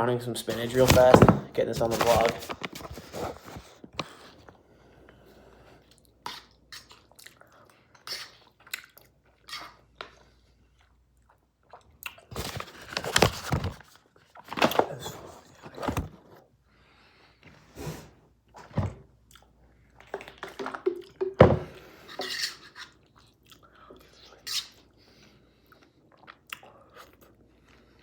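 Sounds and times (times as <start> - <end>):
person chewing: 5.8 - 12.8, 19.3 - 25.0, 25.6 - 28.0.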